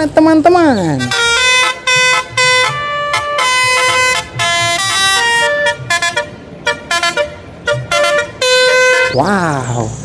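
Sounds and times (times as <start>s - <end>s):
toy bus horn tune: 0.9s - 9.2s.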